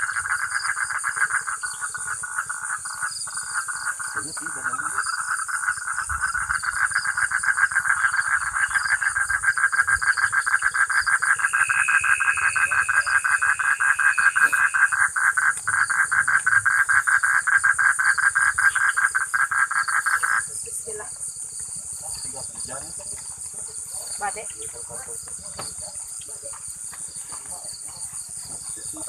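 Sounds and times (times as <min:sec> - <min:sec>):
frog pulsed trill: 0:00.0 - 0:20.7
high insect buzz: 0:00.0 - 0:27.3.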